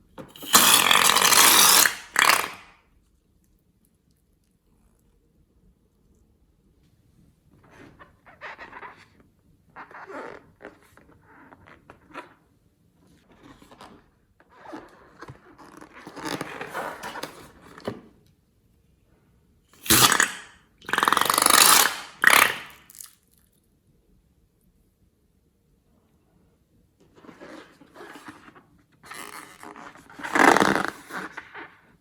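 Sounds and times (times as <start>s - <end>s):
loud slime squelching: 0.3s - 2.7s, 19.8s - 23.2s, 29.2s - 31.7s.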